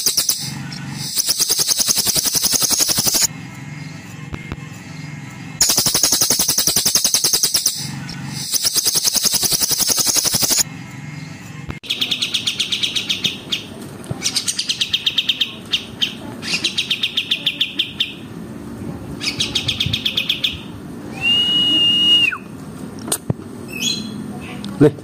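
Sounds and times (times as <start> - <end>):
long bird whistle: 0.0 - 3.3, 8.4 - 10.6, 21.1 - 22.5
songbird trill: 0.0 - 4.0, 4.9 - 13.7.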